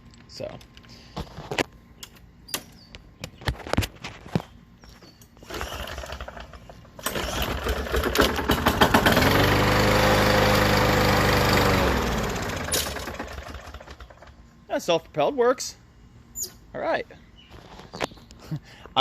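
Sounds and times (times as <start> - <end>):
lawn mower engine running: 5.4 - 14.6.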